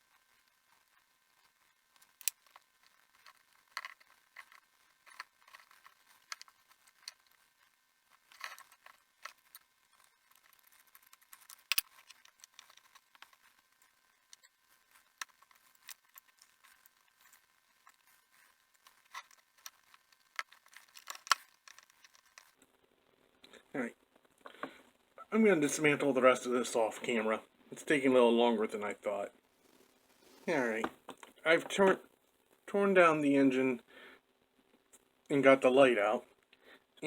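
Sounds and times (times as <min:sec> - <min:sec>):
small clicks and scrapes: 0:00.0 - 0:22.7.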